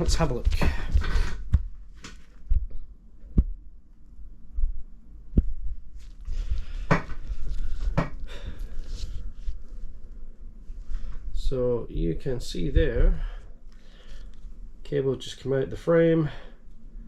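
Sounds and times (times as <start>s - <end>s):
rustling: 0.0s - 11.4s.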